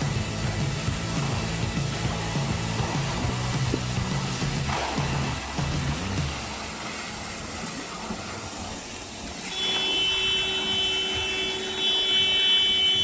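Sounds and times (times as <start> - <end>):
construction machinery running: 0.0 - 13.0.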